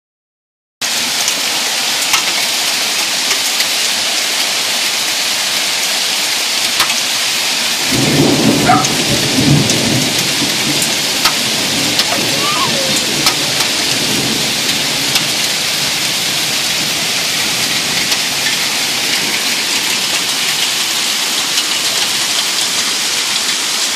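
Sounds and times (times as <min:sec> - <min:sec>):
heavy rain hissing: 0:00.8 - 0:23.9
hailstones clicking: 0:00.9 - 0:23.9
thunder rumble: 0:07.8 - 0:20.8.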